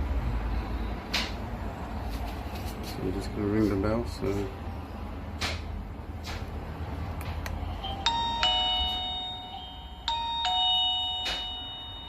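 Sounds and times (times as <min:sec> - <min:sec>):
electronic two-note doorbell chime: 0:07.8 - 0:12.0.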